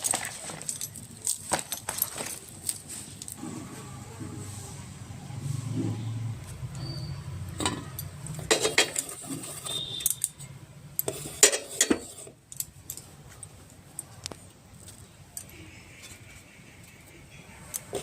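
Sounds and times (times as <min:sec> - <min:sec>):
kitchen utensils clinking: 0:06.8 - 0:12.4.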